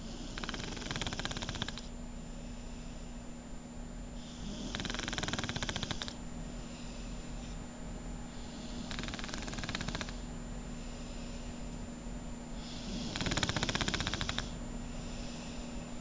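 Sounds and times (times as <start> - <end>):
rattling snores: 0.0 - 1.9, 4.2 - 6.2, 8.4 - 10.3, 12.6 - 14.6
steady low hum: 0.0 - 16.0.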